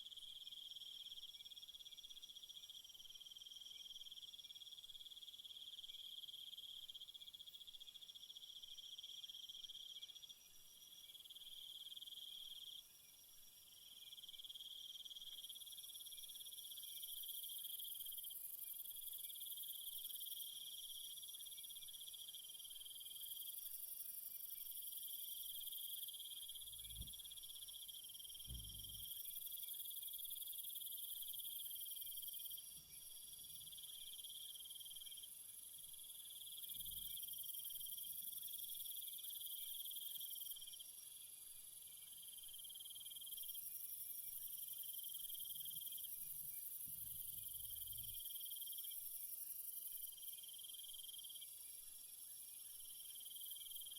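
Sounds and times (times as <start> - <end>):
crickets chirring: 42.2 - 51.4.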